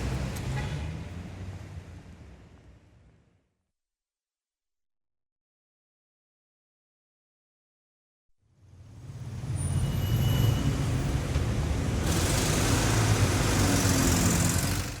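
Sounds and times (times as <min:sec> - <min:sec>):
traffic engines rumbling: 0:00.0 - 0:03.4, 0:08.7 - 0:15.0
road noise: 0:00.0 - 0:03.5, 0:08.5 - 0:15.0.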